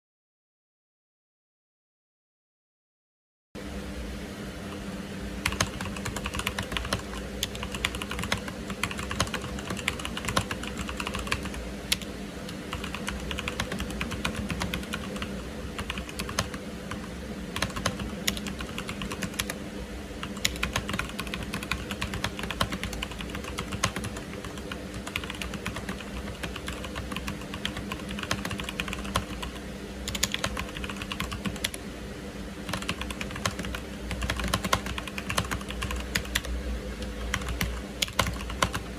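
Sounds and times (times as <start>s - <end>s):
steady low hum: 3.6s - 38.9s
mechanical keyboard typing: 5.4s - 19.6s, 20.2s - 31.8s, 32.6s - 36.5s, 37.1s - 38.9s.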